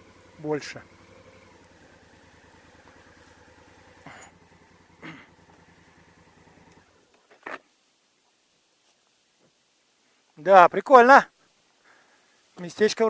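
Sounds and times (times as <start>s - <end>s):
motorcycle engine idling: 0.0s - 7.3s.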